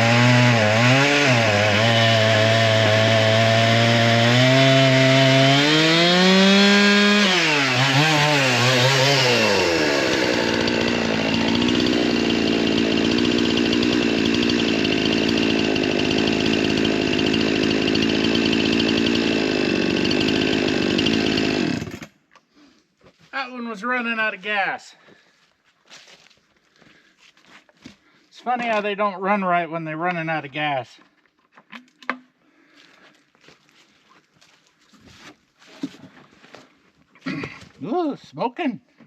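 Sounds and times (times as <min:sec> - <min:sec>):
chainsaw engine revving: 0:00.0 - 0:22.1.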